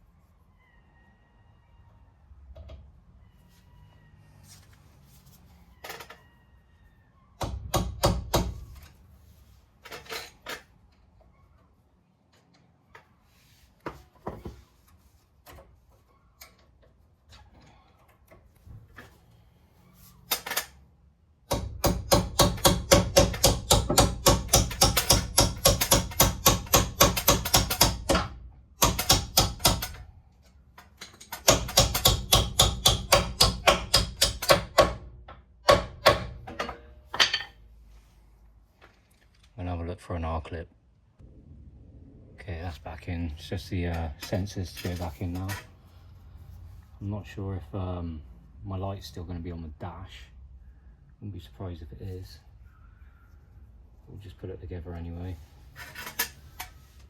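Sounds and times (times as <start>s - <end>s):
hand ratchet clicking: 21.5s - 30.0s, 31.0s - 35.0s
tools knocking on metal: 21.5s - 30.0s, 31.0s - 37.6s.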